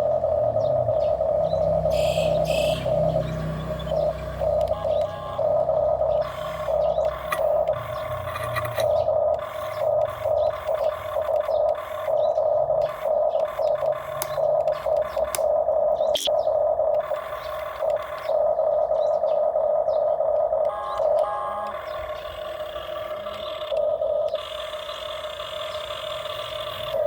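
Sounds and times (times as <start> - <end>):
small electric motors whining: 0.0 - 27.0
sharp clicks: 4.4 - 5.2, 12.8 - 18.4.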